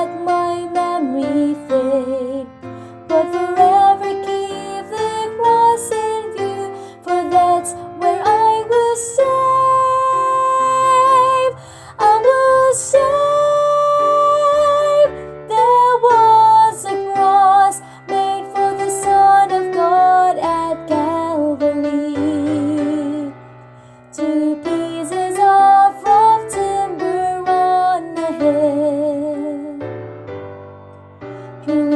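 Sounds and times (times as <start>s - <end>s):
woman singing gospel: 3.1s - 23.3s.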